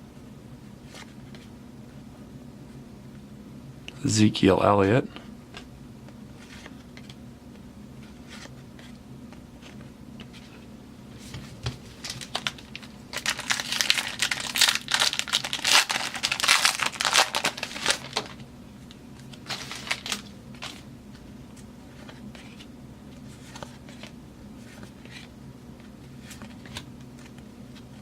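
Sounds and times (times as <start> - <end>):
wrapper tearing and crinkling: 12.0 - 18.4, 19.4 - 20.8.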